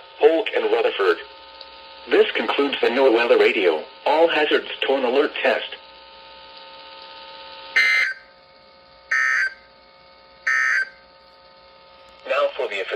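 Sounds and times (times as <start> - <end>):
digital data bursts: 7.8 - 8.2, 9.1 - 9.6, 10.5 - 11.0.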